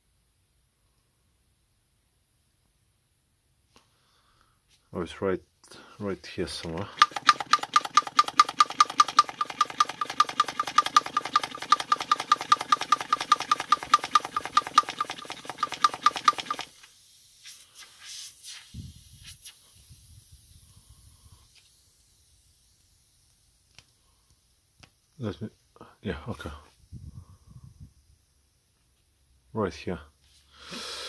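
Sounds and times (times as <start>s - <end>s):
electric air pump pulsing: 6.7s - 17.6s.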